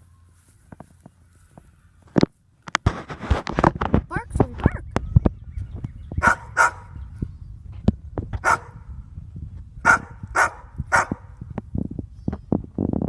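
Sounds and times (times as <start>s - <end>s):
dog barking: 6.2s - 7.0s, 8.4s - 8.8s, 9.8s - 11.3s.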